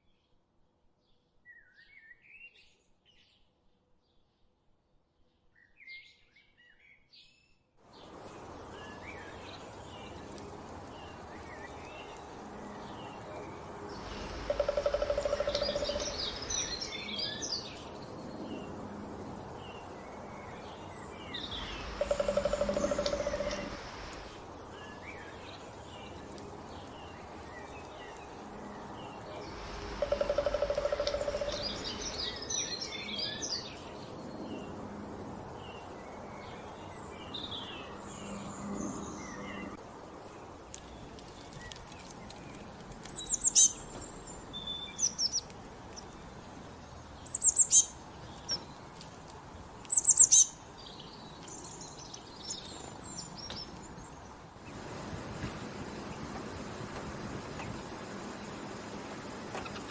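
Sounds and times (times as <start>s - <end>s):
outdoor background noise: 0.0s - 59.9s
wild birds chirping: 5.4s - 59.9s.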